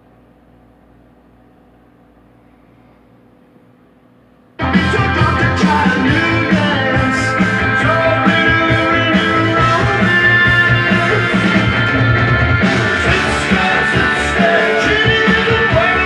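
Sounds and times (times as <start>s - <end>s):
rock song from vinyl record: 4.6s - 16.0s.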